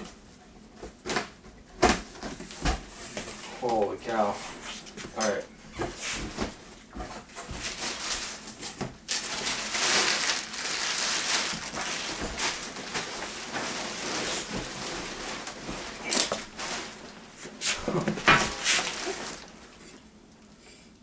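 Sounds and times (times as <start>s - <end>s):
packing material rustling: 7.4s - 19.9s.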